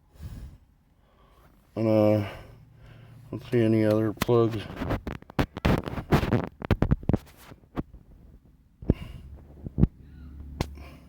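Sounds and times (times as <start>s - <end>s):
phone handling rubbing and rustling: 3.4s - 8.4s.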